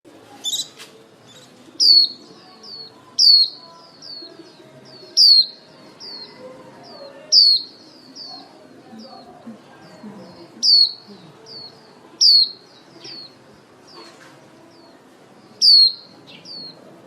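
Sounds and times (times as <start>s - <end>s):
bird twittering calls: 0.4s - 16.8s.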